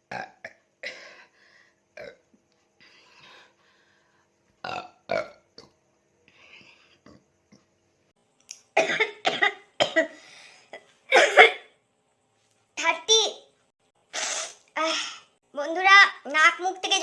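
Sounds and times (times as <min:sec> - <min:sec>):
woman burping: 0:02.0 - 0:02.2.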